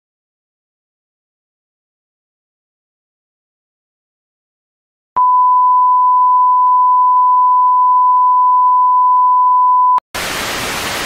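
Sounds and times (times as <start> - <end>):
steady electronic beep: 5.2 - 10.0
static hiss: 10.2 - 11.0.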